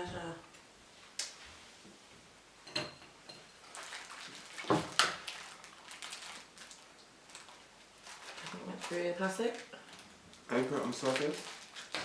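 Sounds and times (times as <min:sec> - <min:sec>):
tableware clicks and knocks: 0:02.6 - 0:03.5
light crackling and rustling: 0:03.6 - 0:12.0.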